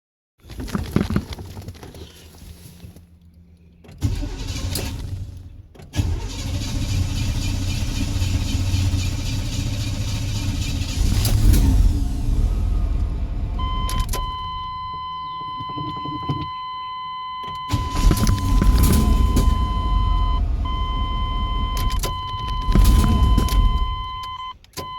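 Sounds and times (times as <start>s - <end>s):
car starter cranking: 3.8s - 16.7s, 17.3s - 24.9s
car engine revving: 3.9s - 14.6s, 17.7s - 24.3s
high electronic warning tone: 13.6s - 24.9s.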